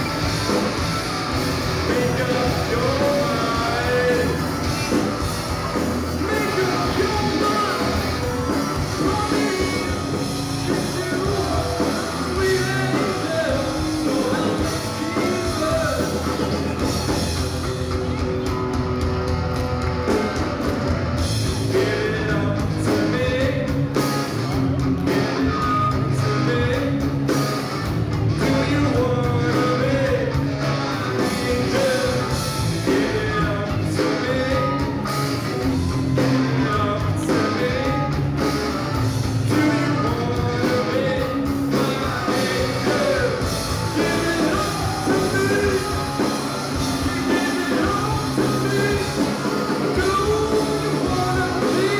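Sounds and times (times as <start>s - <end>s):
rock band playing: 0.0s - 51.9s
person singing: 1.6s - 5.2s, 6.0s - 16.5s, 21.6s - 24.2s, 28.3s - 38.5s, 39.3s - 51.9s.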